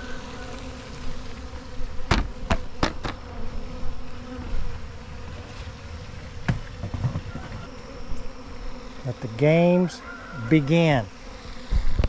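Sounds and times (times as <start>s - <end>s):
honeybees buzzing: 0.0s - 12.0s
sharp knocks: 2.1s - 3.2s.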